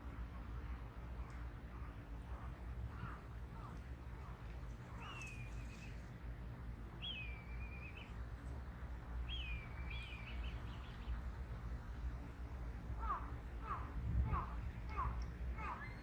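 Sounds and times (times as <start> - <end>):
steady low hum: 0.0 - 16.0
bird whistling call: 7.0 - 8.1.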